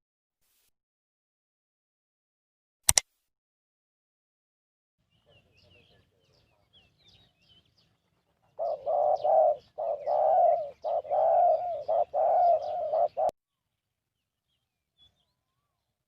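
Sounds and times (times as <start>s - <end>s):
faint small bird chirps: 5.0s - 16.0s
dove cooing: 8.5s - 13.3s.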